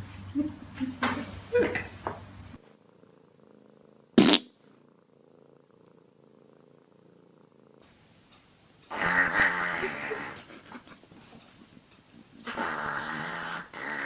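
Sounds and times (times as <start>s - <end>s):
animal purring: 2.6s - 7.9s, 8.9s - 14.0s.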